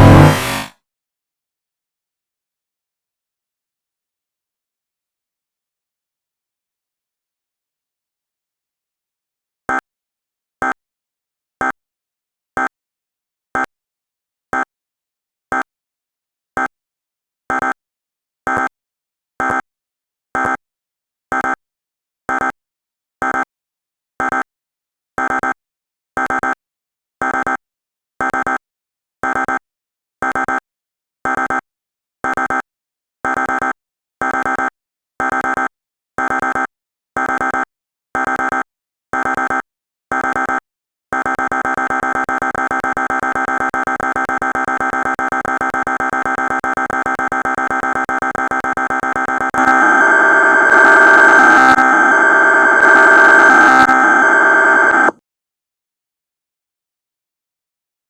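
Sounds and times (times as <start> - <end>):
short alert beeps: 0.0 - 0.7
steady continuous alert tone: 0.0 - 0.7.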